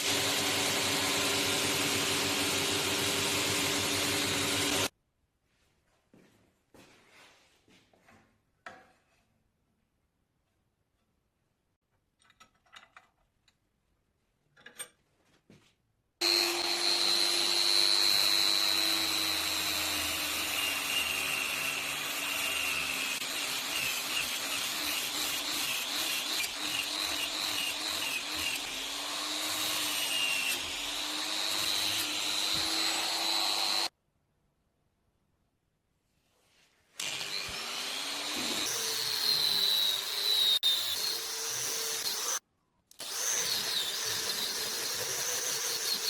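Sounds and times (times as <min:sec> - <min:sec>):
power tool whining on steel: 0:00.0 - 0:04.9, 0:16.2 - 0:33.9, 0:37.0 - 0:42.4, 0:43.0 - 0:46.0.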